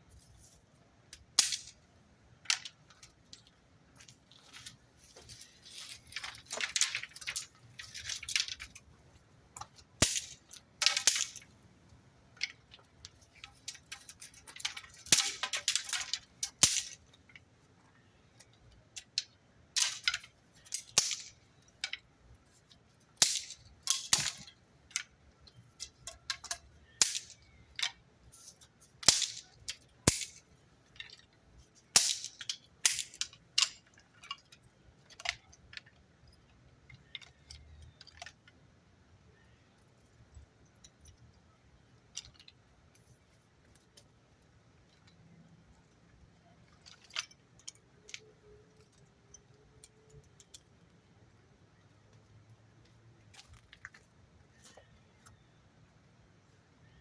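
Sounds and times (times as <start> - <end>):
sharp clicks and crackles: 18.3 - 22.1.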